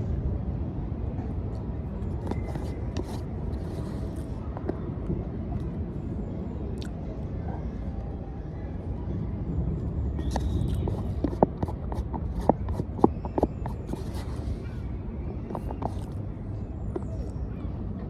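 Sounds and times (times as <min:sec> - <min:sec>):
outdoor rumble: 0:09.2 - 0:18.0.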